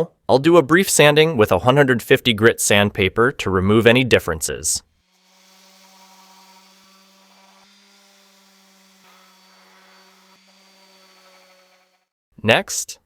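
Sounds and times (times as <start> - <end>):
electric sander sanding wood: 5.0 - 12.1.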